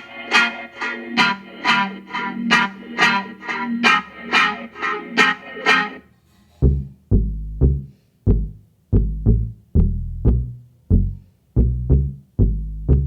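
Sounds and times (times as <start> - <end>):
drum-machine beat: 0.0 - 6.0, 6.6 - 13.0
plucked guitar-like phrase: 0.0 - 6.0.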